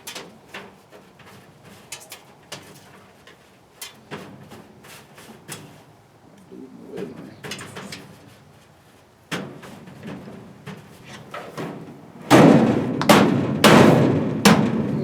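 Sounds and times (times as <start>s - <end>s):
loud metal bangs and clunks: 11.6s - 15.0s.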